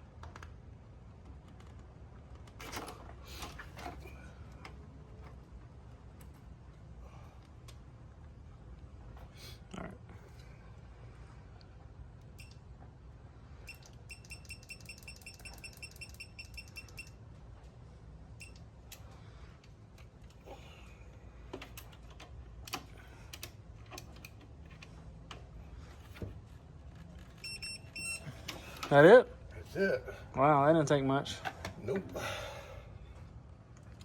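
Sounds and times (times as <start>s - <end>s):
faint electronic beeping: 13.6s - 17.2s, 27.4s - 28.4s.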